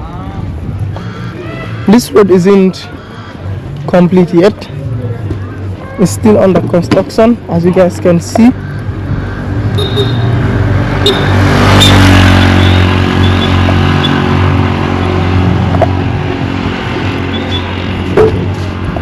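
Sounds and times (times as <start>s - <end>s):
road noise: 0.0s - 19.0s
vehicle engine running: 8.6s - 19.0s.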